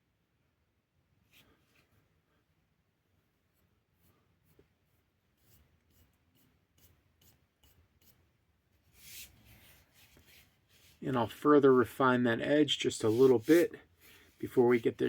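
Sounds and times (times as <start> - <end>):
faint scratching and rubbing: 3.4 - 15.0.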